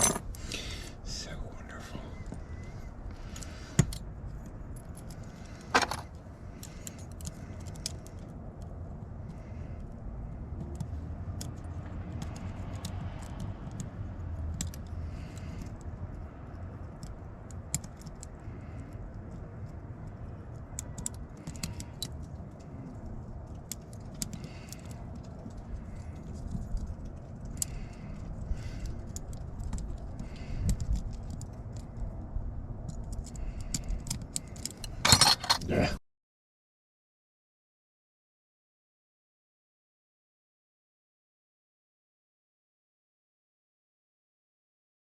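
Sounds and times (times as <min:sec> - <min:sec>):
lock hardware clicks and rattles: 0:00.0 - 0:00.6, 0:03.2 - 0:08.7, 0:32.8 - 0:35.7
steady low hum: 0:00.0 - 0:12.6.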